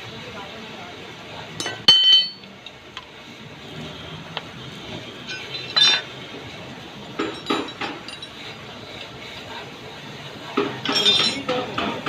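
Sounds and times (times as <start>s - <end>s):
metal tools clinking on steel: 1.6s - 2.5s, 5.2s - 6.1s, 7.2s - 8.5s, 10.8s - 11.7s.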